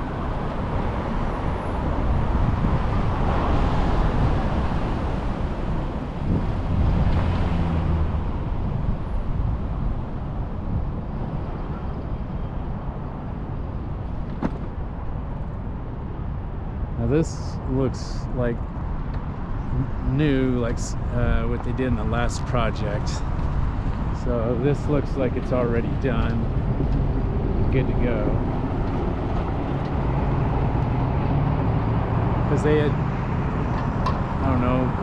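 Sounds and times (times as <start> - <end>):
vehicles passing: 0.0 - 35.0
engine rumble: 17.0 - 35.0.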